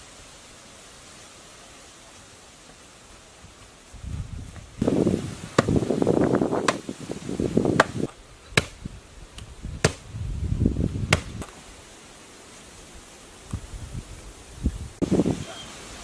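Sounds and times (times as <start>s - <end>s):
hand tool chopping: 5.6s - 5.8s, 6.6s - 6.9s, 7.8s - 8.8s, 9.8s - 10.0s, 11.1s - 11.6s.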